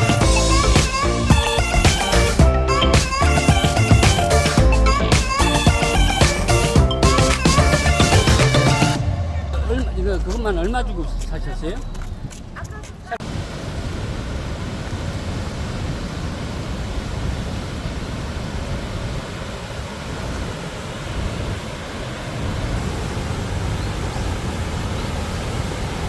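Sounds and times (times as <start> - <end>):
waterfall roaring: 7.4 - 26.0.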